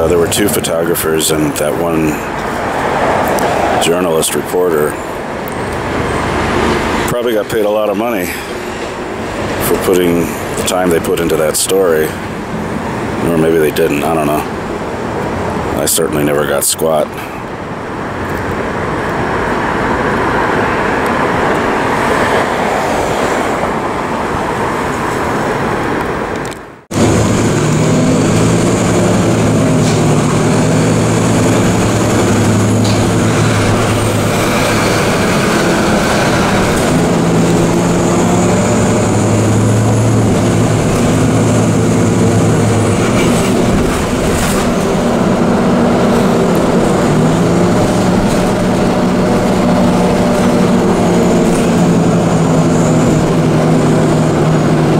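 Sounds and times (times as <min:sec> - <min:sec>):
subway train rumble: 0:00.0 - 0:54.9
low motor hum: 0:26.9 - 0:54.9.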